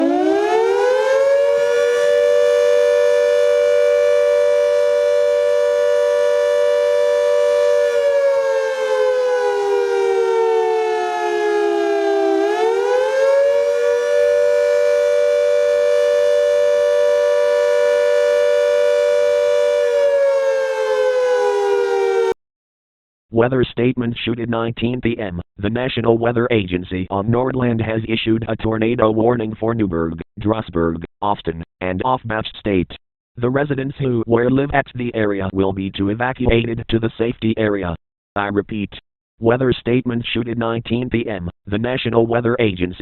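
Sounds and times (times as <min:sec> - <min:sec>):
civil defense siren wailing: 0:00.0 - 0:22.4.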